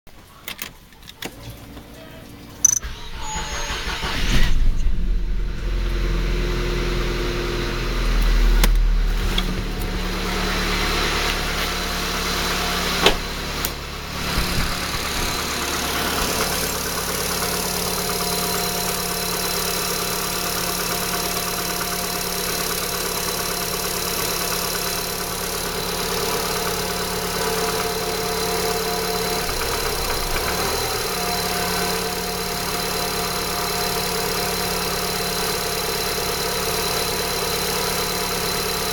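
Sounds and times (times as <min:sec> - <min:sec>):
sharp click: 0:02.6 - 0:02.8
engine revving: 0:03.7 - 0:35.4
petrol engine idling: 0:06.6 - 0:38.9.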